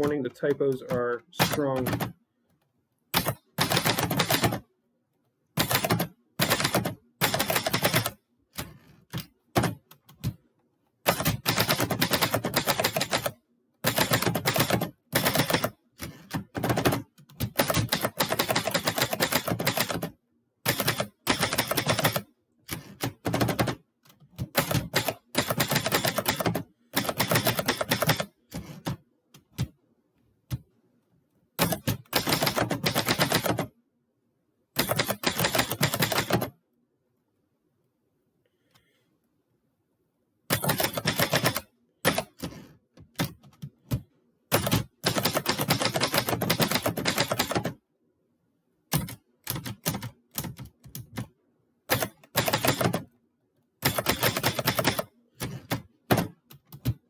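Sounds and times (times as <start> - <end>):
typewriter keystrokes: 0.0 - 2.2, 3.2 - 4.6, 5.6 - 10.4, 11.1 - 20.1, 20.7 - 29.7, 31.6 - 33.7, 34.8 - 36.5, 40.5 - 47.8, 48.9 - 51.3, 51.9 - 53.1, 53.8 - 57.0.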